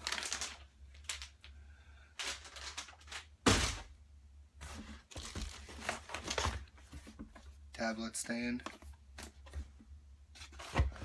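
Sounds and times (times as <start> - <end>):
rustles and clatters: 2.2 - 3.8.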